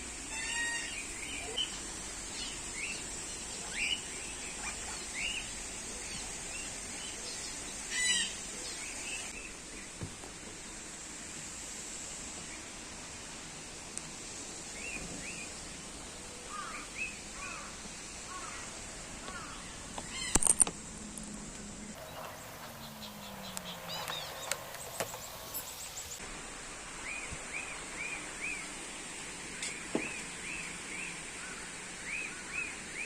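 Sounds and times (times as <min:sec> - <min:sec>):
birds chirping: 0:21.9 - 0:26.2.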